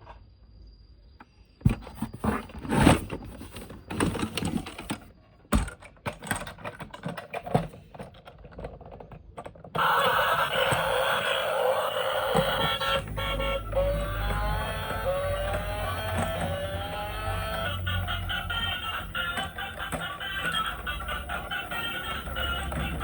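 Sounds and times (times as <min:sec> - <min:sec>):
electronic toy sound: 0:09.8 - 0:23.0.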